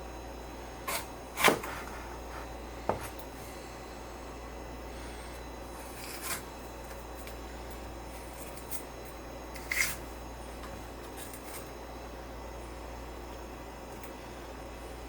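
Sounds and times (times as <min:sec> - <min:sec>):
steady low hum: 0:00.0 - 0:15.0
knife cutting pepper on cutting board: 0:00.8 - 0:03.2.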